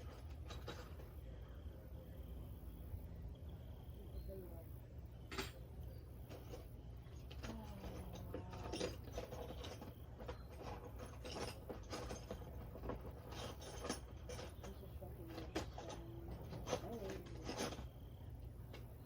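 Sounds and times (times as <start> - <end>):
steady low hum: 0.0 - 19.0
hand tools clinking on metal: 5.3 - 18.9.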